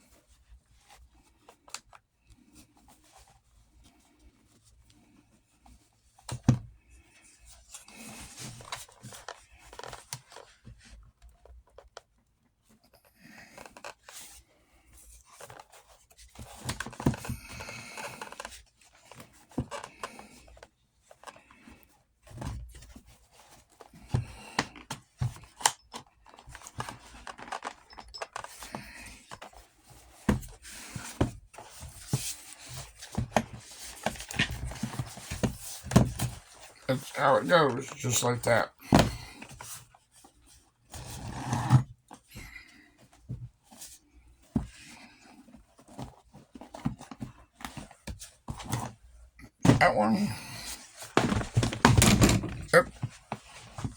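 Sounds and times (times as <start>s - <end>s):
leather scraping and rubbing: 40.9s - 41.9s.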